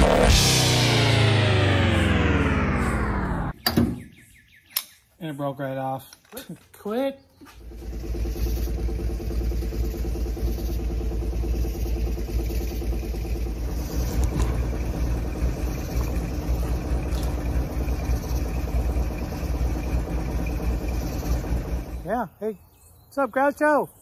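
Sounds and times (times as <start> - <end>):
car engine rumbling: 0.0 - 4.3, 7.4 - 22.3.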